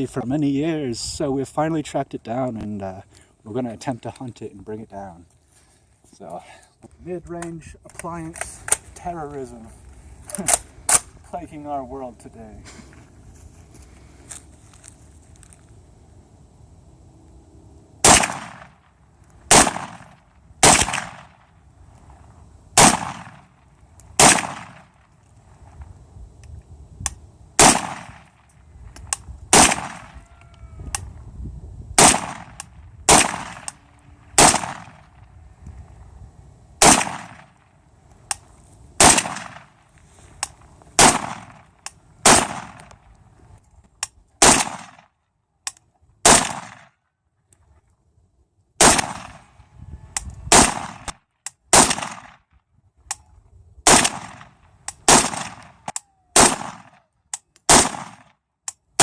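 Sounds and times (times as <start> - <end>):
rifle shots with echo: 18.0 - 18.9, 19.5 - 21.5, 22.8 - 23.5, 24.2 - 25.0, 27.6 - 28.4, 29.5 - 30.2, 32.0 - 35.1, 36.8 - 37.6, 39.0 - 39.8, 41.0 - 42.9, 44.4 - 45.1, 46.2 - 46.9, 48.8 - 49.5, 50.5 - 51.1, 51.7 - 52.4, 53.8 - 57.0, 57.7 - 58.3.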